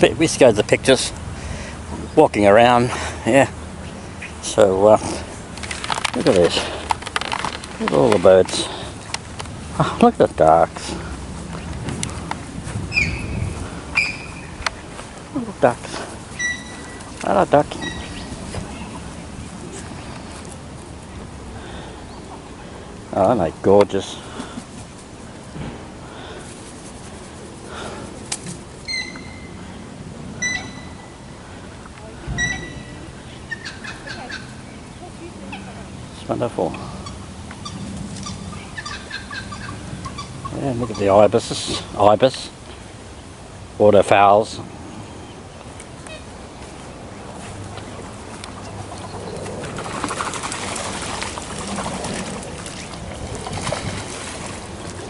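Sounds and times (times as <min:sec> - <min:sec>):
bird chirps: 0:12.9 - 0:14.9, 0:16.4 - 0:18.9, 0:28.9 - 0:29.6, 0:30.4 - 0:31.2, 0:32.4 - 0:34.6
high clear bird calls: 0:12.9 - 0:15.0, 0:16.3 - 0:19.0, 0:28.8 - 0:29.6, 0:30.4 - 0:31.3, 0:32.4 - 0:35.7, 0:37.0 - 0:41.2.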